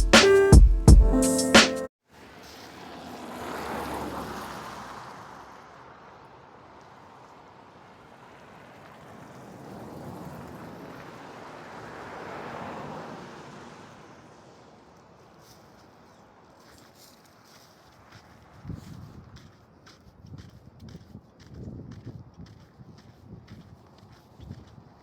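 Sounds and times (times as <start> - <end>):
music: 0.0 - 1.9.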